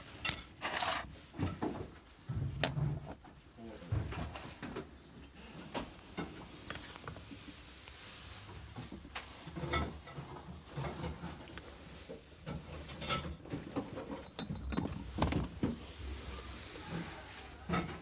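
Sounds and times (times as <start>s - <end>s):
objects knocking and clicking: 0.0s - 3.4s, 13.0s - 15.8s.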